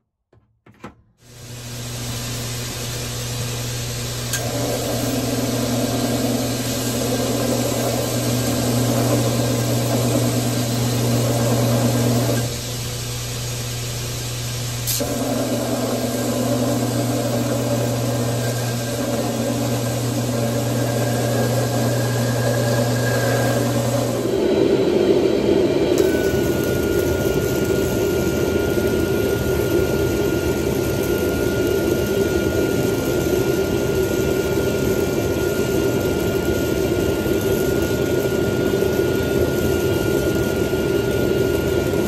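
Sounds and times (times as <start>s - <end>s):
hydraulic pump humming: 14.9s - 42.0s.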